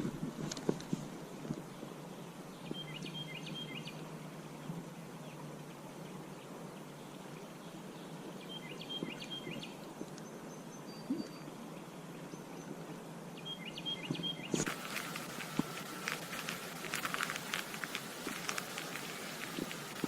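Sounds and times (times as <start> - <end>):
songbird chirping: 1.6 - 12.8, 13.4 - 20.0
creek water rushing: 14.6 - 20.0.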